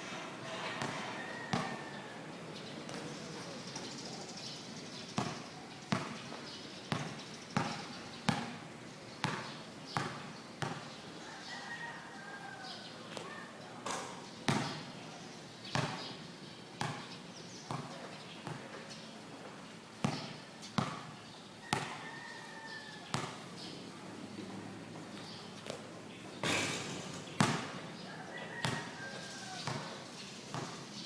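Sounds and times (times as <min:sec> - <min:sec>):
background noise: 0:00.0 - 0:31.0
basketball bouncing on hard court: 0:01.5 - 0:01.7, 0:05.2 - 0:06.3, 0:06.9 - 0:08.6, 0:09.2 - 0:10.8, 0:14.5 - 0:14.8, 0:15.7 - 0:16.0, 0:16.8 - 0:17.1, 0:17.7 - 0:18.6, 0:20.0 - 0:22.0, 0:23.1 - 0:23.4, 0:27.4 - 0:27.7, 0:28.6 - 0:28.8, 0:30.5 - 0:30.8.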